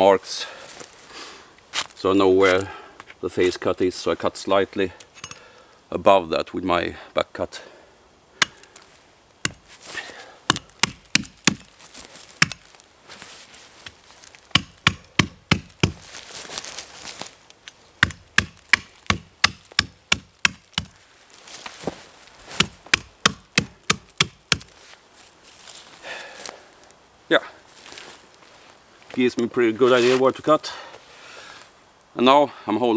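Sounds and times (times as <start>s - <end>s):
axe chopping into trunk: 8.4s - 8.7s, 9.5s - 9.8s, 10.5s - 11.7s, 12.4s - 12.7s, 14.5s - 16.1s, 18.0s - 21.0s, 22.5s - 24.8s.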